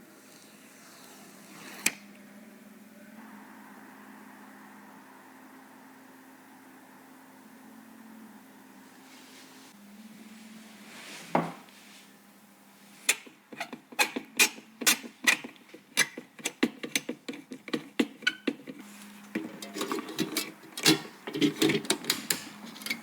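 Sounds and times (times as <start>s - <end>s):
computer parts clicking and tapping: 13.1s - 18.8s, 19.4s - 23.0s
parts rattling: 13.1s - 23.0s.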